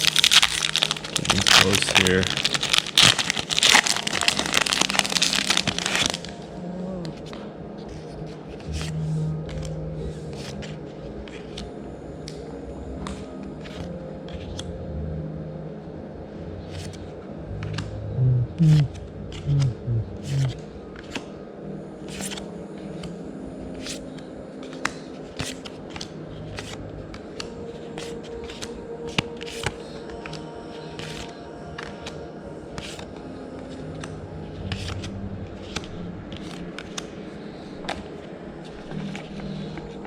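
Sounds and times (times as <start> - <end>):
short low-pitched sounds: 17.4 - 20.5
trading cards snapping and sliding: 18.6 - 21.3, 22.1 - 22.4, 24.7 - 30.4, 34.7 - 37.1.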